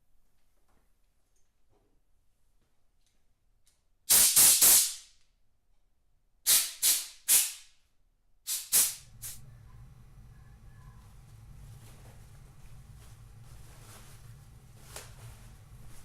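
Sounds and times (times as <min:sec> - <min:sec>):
faint low hum: 0:09.0 - 0:16.0.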